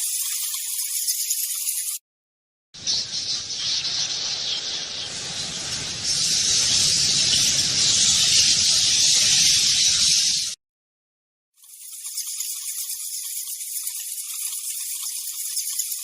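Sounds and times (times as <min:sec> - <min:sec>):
bat swarm high-pitched hissing: 0:00.0 - 0:02.0, 0:02.8 - 0:10.6, 0:11.6 - 0:16.0.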